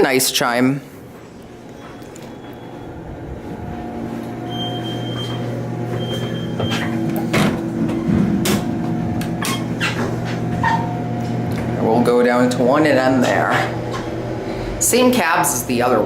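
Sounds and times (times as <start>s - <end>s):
elevator hum: 0.0s - 16.0s
short high beeps: 4.5s - 5.4s.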